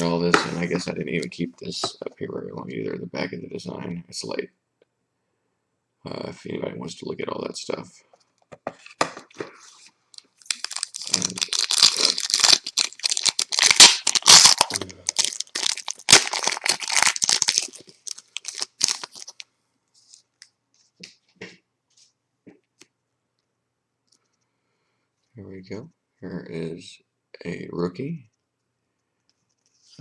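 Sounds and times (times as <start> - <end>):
wrapper tearing and crinkling: 10.2 - 19.4.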